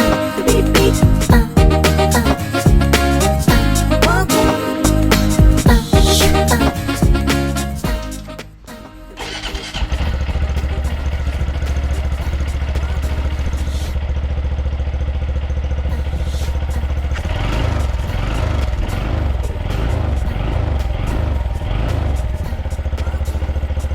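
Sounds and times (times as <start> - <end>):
motorcycle engine starting and idling: 9.2 - 23.9.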